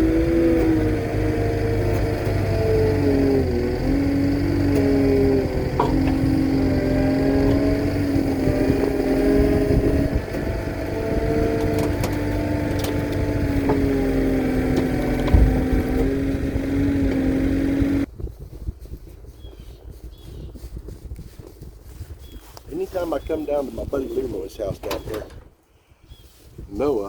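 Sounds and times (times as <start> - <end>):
vehicle engine revving: 0.0 - 18.1.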